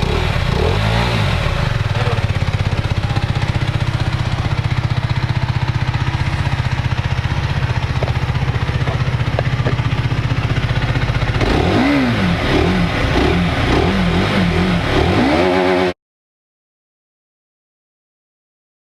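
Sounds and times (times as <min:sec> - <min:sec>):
motorcycle engine idling and revving: 0:00.0 - 0:16.0.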